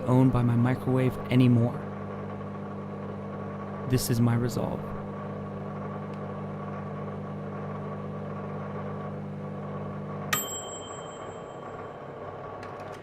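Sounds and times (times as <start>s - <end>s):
microwave oven humming: 0.0s - 13.0s
microwave bell ding: 10.3s - 12.2s.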